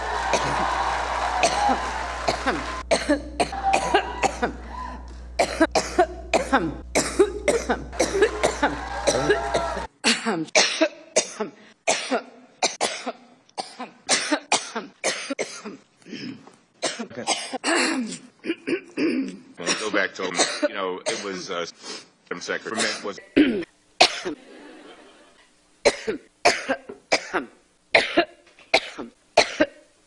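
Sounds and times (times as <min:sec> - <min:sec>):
steady low hum: 0:01.5 - 0:10.4
woman coughing: 0:02.3 - 0:04.6, 0:05.4 - 0:21.4, 0:22.8 - 0:24.4, 0:25.9 - 0:29.8
throat clearing: 0:10.1 - 0:21.4.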